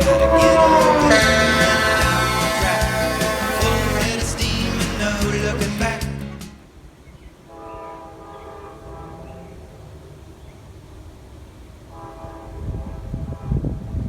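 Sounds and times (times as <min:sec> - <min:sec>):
locomotive air horn blasts: 0:00.0 - 0:05.1, 0:07.5 - 0:09.4, 0:11.9 - 0:13.7
diesel engines at full throttle: 0:00.0 - 0:06.4.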